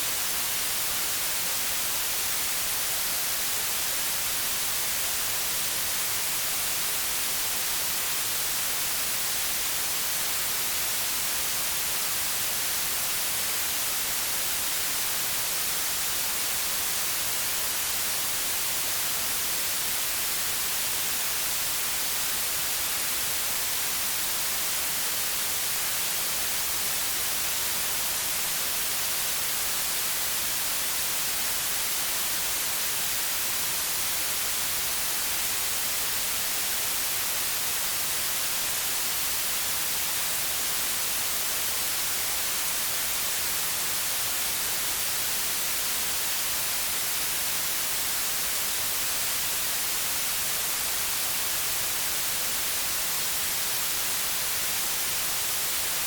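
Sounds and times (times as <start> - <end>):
white noise hiss: 0.0 - 56.0.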